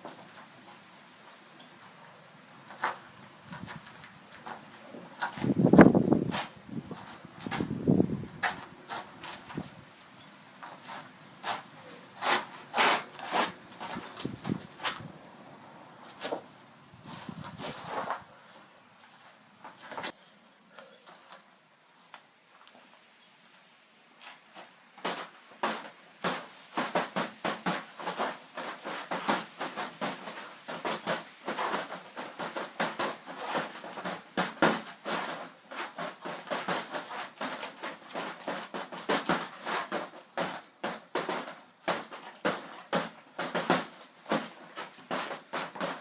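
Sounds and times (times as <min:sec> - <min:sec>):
scuffing and clicking while walking: 0:02.7 - 0:07.8, 0:08.4 - 0:09.8, 0:10.6 - 0:15.1, 0:24.2 - 0:46.0.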